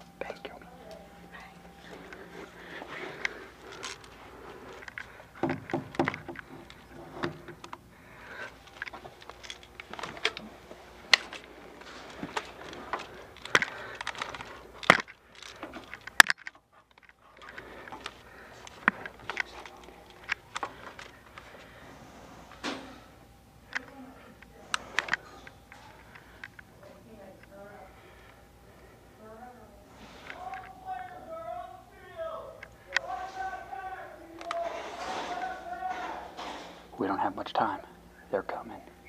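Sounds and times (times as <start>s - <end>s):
gear rattling and clicking: 12.3s - 21.2s.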